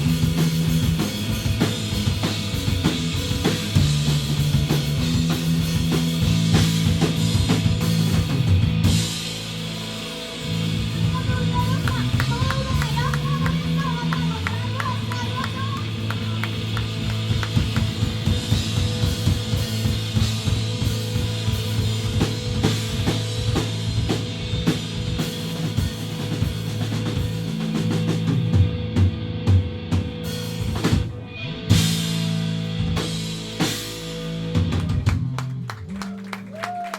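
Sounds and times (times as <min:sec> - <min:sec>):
drum kit pounding: 0:00.0 - 0:36.9
held bass and guitar notes: 0:00.0 - 0:36.9.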